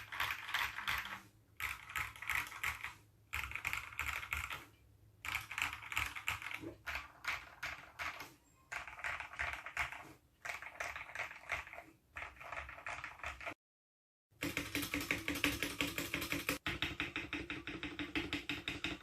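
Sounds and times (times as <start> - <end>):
mechanical keyboard clacking: 0.0 - 4.6, 5.2 - 13.6, 14.4 - 19.0.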